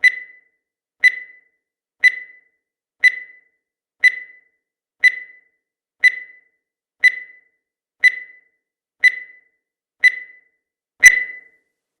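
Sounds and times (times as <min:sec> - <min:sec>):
short high timer beeps: 0:11.0 - 0:11.5
louder fuller beep: 0:11.0 - 0:11.6.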